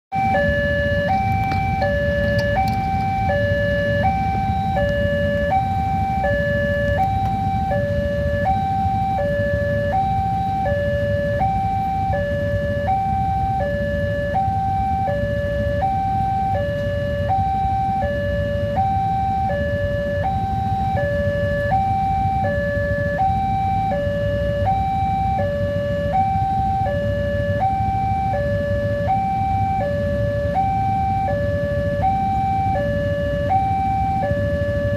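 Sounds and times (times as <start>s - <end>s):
two-tone crossing alarm: 0.1s - 34.9s.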